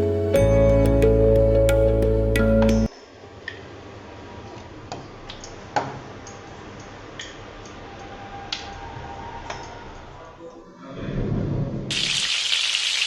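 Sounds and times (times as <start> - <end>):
background music: 0.0 - 2.9.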